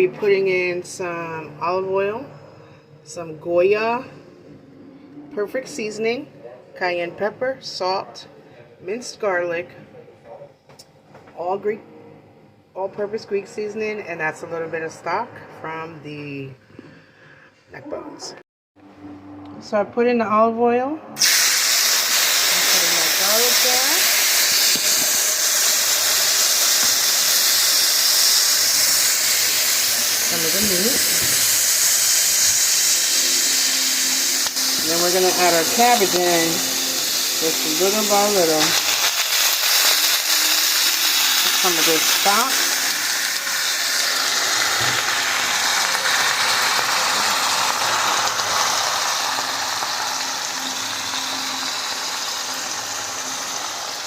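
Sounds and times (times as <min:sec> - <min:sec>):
oil and garlic sizzling in a pan: 0:21.2 - 0:54.0.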